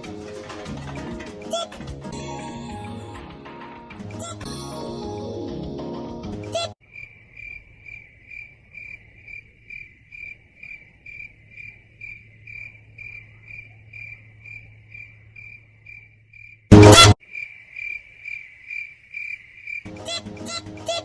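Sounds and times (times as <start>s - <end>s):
music cue: 0.0s - 6.5s, 16.7s - 17.2s
cricket chirping: 6.8s - 20.2s.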